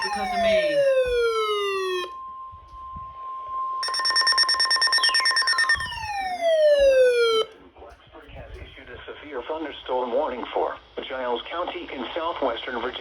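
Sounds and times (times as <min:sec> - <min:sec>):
harsh pulsing buzz: 0:00.0 - 0:02.1
falling siren-like sweeps: 0:00.0 - 0:07.5
high warning alarm tone: 0:00.0 - 0:07.5.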